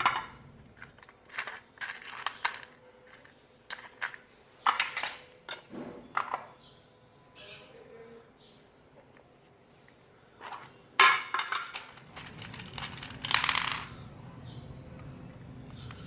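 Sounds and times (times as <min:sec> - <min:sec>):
metal objects clattering: 0:00.0 - 0:06.5, 0:10.4 - 0:14.1.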